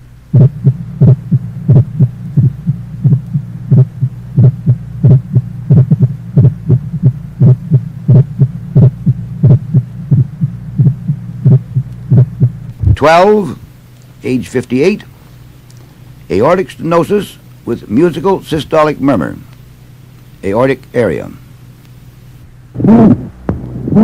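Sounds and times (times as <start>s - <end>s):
low hum: 0.0s - 24.0s
heartbeat thuds through stethoscope: 0.3s - 13.1s, 22.9s - 24.0s.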